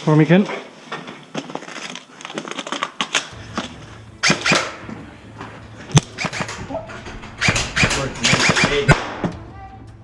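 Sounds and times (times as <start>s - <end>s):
clatter of handled gear: 1.3s - 3.4s
airsoft gun shots: 4.2s - 4.8s, 6.0s - 6.6s, 7.4s - 9.3s.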